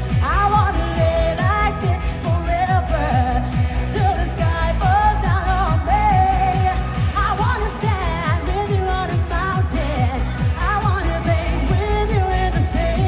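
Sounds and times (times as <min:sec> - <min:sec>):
live dance-pop music: 0:00.0 - 0:13.0.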